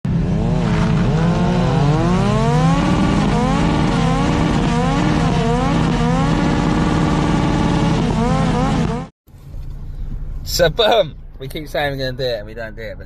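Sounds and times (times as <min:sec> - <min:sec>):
engine revving: 0:00.1 - 0:09.1.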